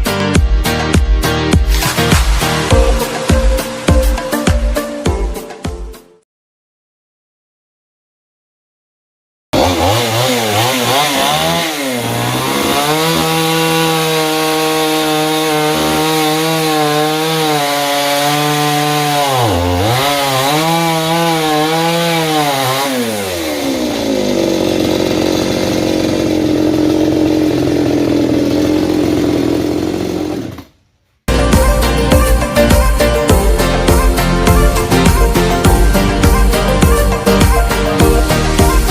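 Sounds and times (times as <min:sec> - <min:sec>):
chainsaw engine revving: 0:09.6 - 0:38.7.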